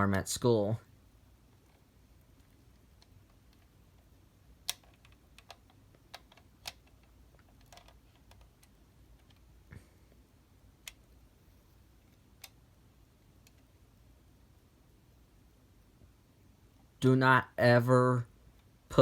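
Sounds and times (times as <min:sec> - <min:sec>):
faint clicks and taps: 0:01.5 - 0:10.2, 0:10.8 - 0:11.2, 0:13.3 - 0:13.8.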